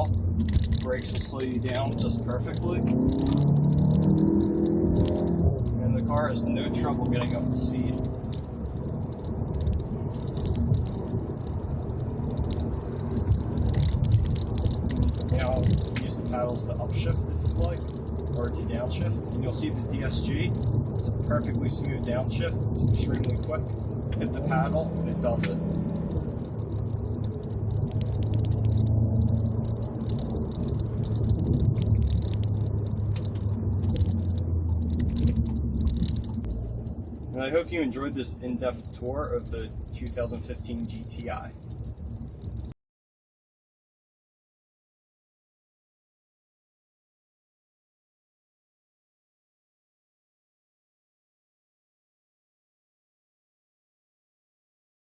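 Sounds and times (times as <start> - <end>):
car cabin road rumble: 0.0 - 42.8
small rattles and clicks: 0.0 - 42.8.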